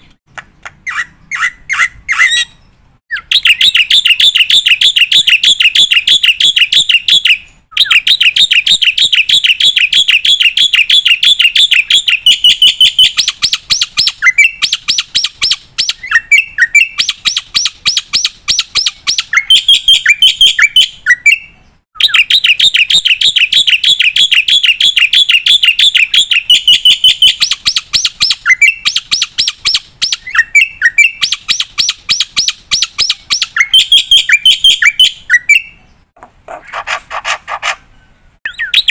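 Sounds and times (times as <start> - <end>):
starling chattering song: 0.0 - 35.8, 36.5 - 38.9.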